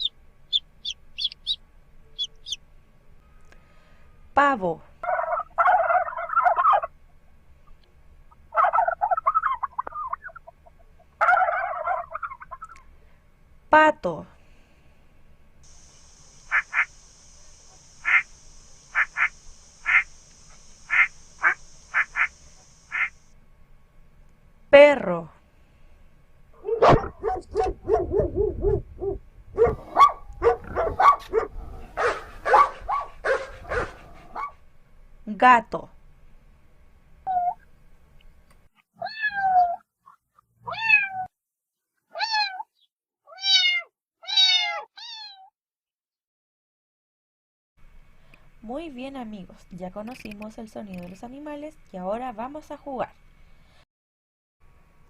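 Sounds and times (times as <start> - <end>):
turkey gobbling: 0.0 - 1.6, 2.2 - 2.6, 5.0 - 7.0, 8.3 - 12.8, 16.0 - 17.0, 17.7 - 23.2
dog barking: 26.6 - 34.6.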